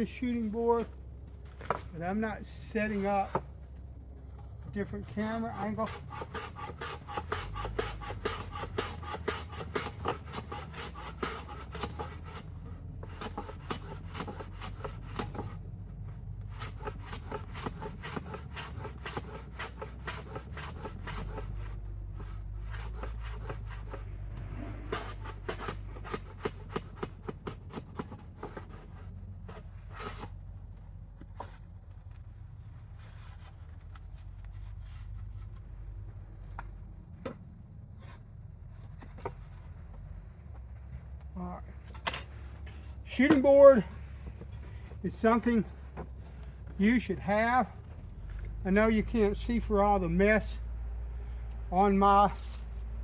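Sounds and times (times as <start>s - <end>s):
hand plane cutting wood: 5.1s - 15.6s, 16.4s - 24.1s, 24.8s - 30.4s.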